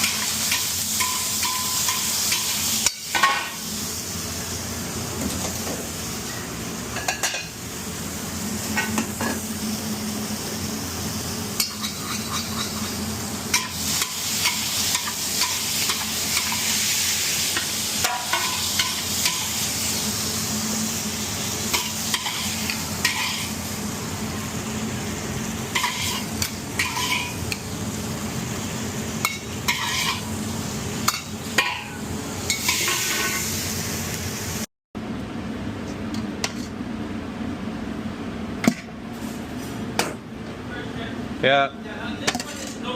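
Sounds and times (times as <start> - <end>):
food sizzling in a pan: 0.0 - 34.7
utensil scraping a pan: 29.7 - 30.2.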